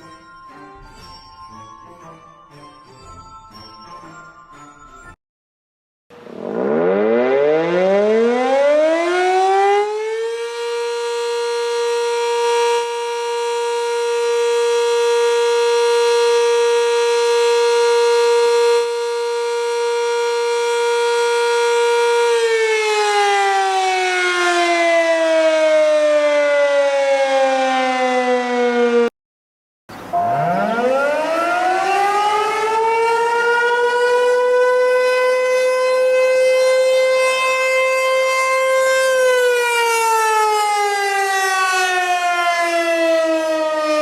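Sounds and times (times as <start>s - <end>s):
warning siren winding: 6.3s - 25.5s.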